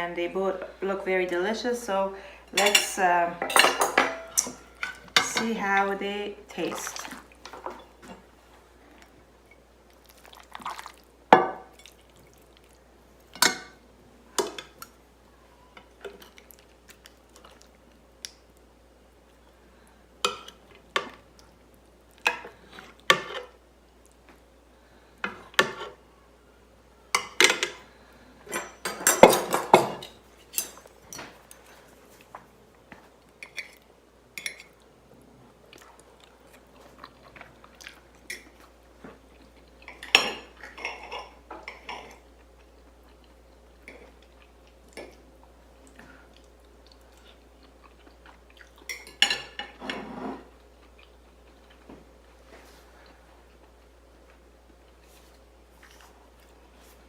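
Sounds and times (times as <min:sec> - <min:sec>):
chewing: 0:35.7 - 0:40.1, 0:42.0 - 0:45.2, 0:45.8 - 0:49.0, 0:50.6 - 0:51.9.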